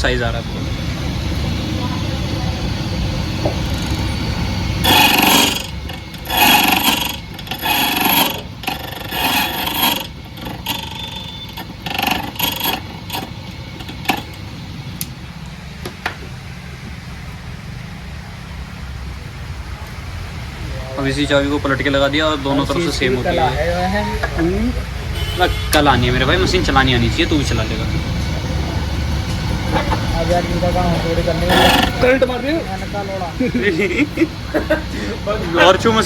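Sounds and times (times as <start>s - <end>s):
key cutting machine grinding metal: 0.0s - 15.2s, 26.0s - 34.2s.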